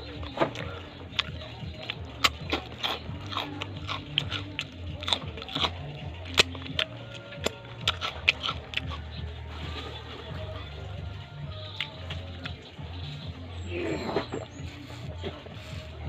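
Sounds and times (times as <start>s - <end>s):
crackers being chewed: 0.0s - 16.0s.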